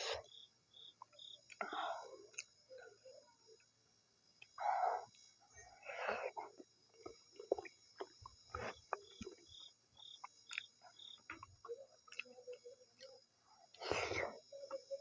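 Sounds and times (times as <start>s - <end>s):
chewing and mouth smacks: 10.2s - 10.7s.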